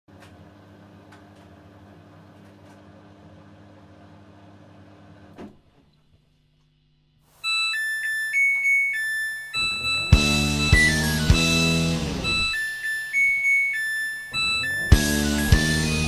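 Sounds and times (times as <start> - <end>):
washing machine beeper melody: 7.4 - 16.0
music with bass and keyboard: 10.1 - 12.6, 14.6 - 16.0.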